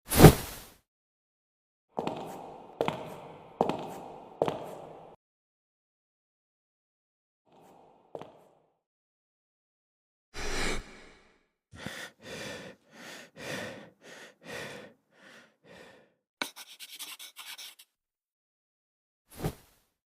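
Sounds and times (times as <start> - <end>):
person gasping: 10.4 - 16.2
quick heavy breaths: 10.4 - 16.2.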